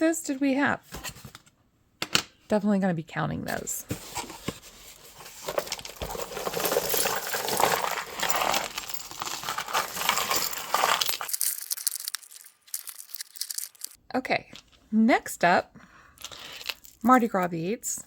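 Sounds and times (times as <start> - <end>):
crinkling: 4.0 - 14.0, 16.2 - 17.1
metal jewelry clinking: 5.4 - 14.0.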